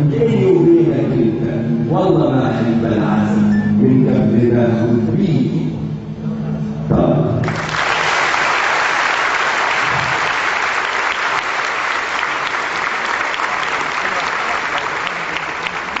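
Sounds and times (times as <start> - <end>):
audience applauding: 7.4 - 16.0
voices in crowd: 12.8 - 16.0.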